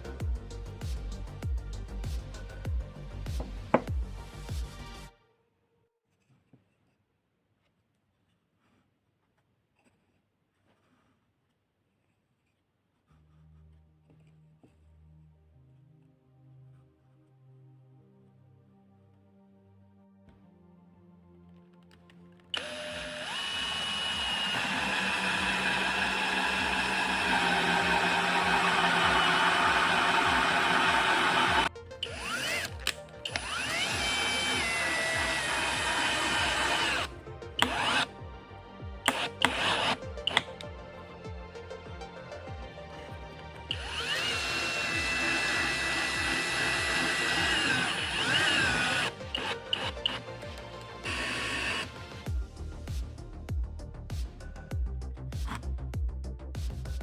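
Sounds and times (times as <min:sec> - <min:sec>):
background music with a beat: 0:00.0 - 0:05.1, 0:26.7 - 0:57.0
electric drill whining: 0:22.6 - 0:38.1, 0:39.0 - 0:40.7, 0:43.6 - 0:52.2
power tool motor whirring: 0:22.6 - 0:38.1, 0:39.0 - 0:40.7, 0:43.7 - 0:52.1
clicks: 0:39.1 - 0:40.7.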